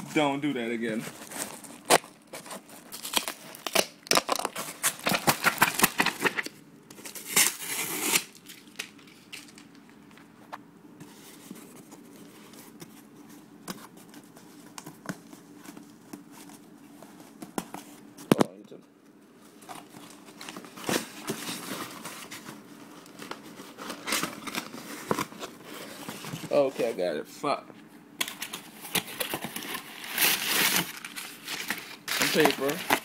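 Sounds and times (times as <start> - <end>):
faint steady hum: 0.0 - 33.0
cardboard box being torn open: 29.0 - 33.0.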